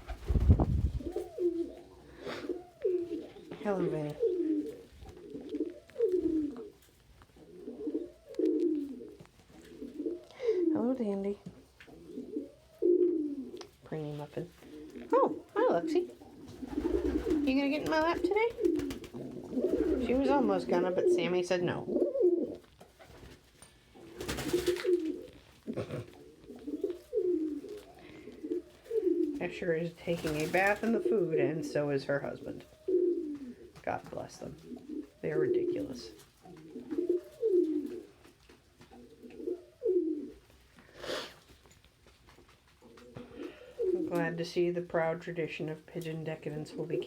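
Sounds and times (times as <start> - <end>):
pigeons cooing: 0.0 - 41.5, 42.8 - 44.7, 46.4 - 47.0
faint clicks: 8.3 - 9.4.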